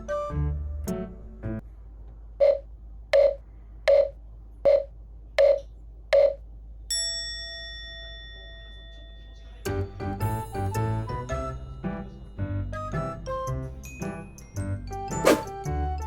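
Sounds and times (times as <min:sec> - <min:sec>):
short electronic beeps: 0:03.2 - 0:04.1, 0:04.7 - 0:06.4
ringing chime: 0:06.9 - 0:09.6.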